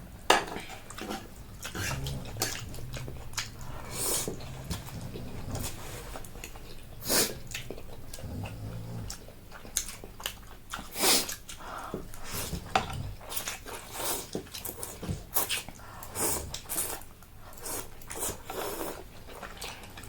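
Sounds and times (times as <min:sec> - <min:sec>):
chewing noodles: 0:00.6 - 0:20.0
loud slurps: 0:01.6 - 0:06.2.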